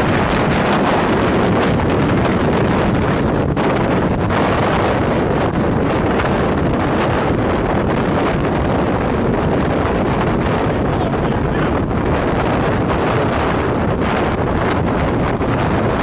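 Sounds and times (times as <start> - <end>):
wind buffeting microphone: 0.0 - 16.0.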